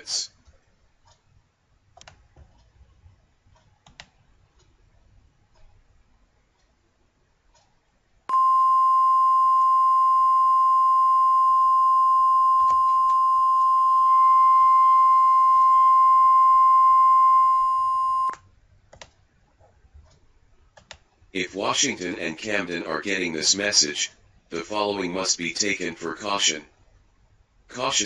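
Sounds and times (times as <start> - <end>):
steady electronic beep: 8.3 - 18.4.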